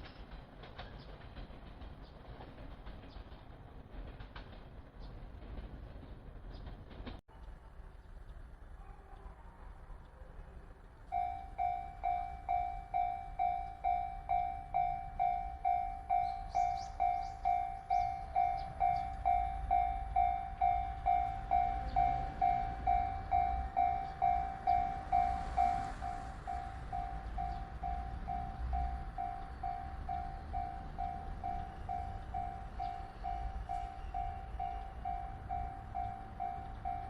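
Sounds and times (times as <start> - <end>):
low train rumble: 0.0 - 37.0
level crossing bell ringing: 11.1 - 37.0.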